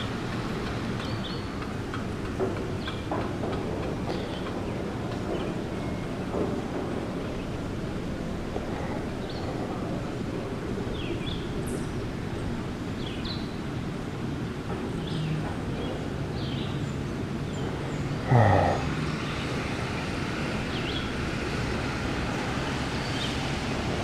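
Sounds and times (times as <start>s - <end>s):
outdoor rumble: 0.0s - 13.0s, 13.8s - 24.0s.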